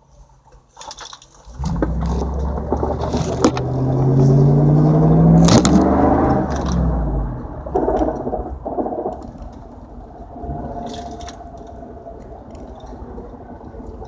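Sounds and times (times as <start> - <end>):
car engine revving: 1.5 - 14.0
sharp clicks or knocks: 5.2 - 7.0.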